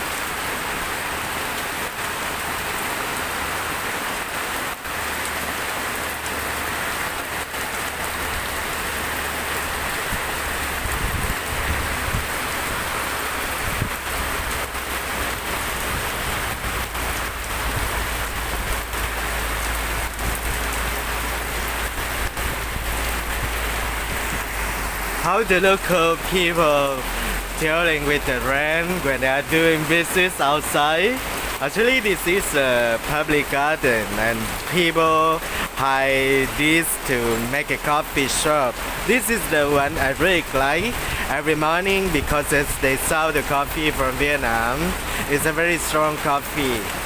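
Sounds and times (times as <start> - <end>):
heavy rain pouring: 0.0 - 47.0.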